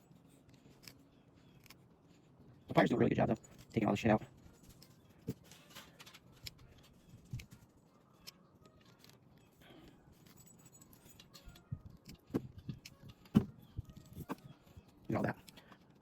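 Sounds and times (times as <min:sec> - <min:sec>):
pliers clicking and scraping: 0:00.4 - 0:01.9, 0:08.2 - 0:16.0.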